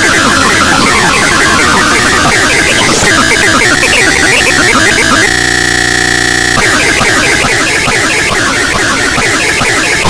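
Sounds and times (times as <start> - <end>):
distorted overlapping cartoon audio: 0.0 - 10.0
harsh buzzing tone: 2.3 - 7.4.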